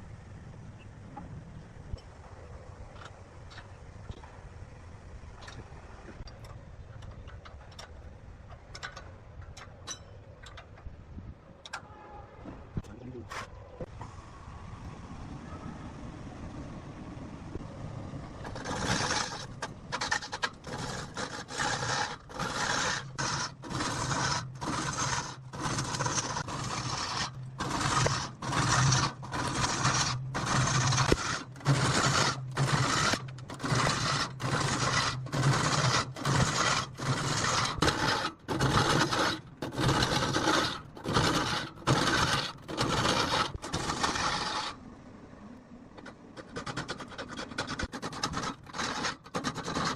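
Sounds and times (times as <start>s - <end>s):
low hum: 0.0s - 46.6s
tool scraping wood: 18.4s - 44.8s, 46.0s - 49.9s.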